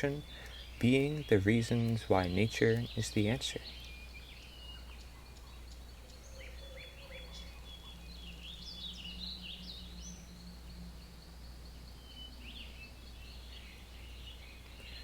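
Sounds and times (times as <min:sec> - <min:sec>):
small birds chirping: 0:00.0 - 0:15.0
low hum: 0:03.7 - 0:15.0.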